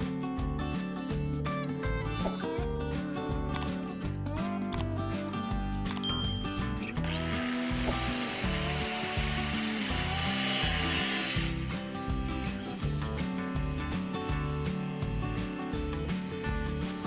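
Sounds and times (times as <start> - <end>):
background music with beat: 0.0 - 17.0
power tool working: 7.0 - 17.0.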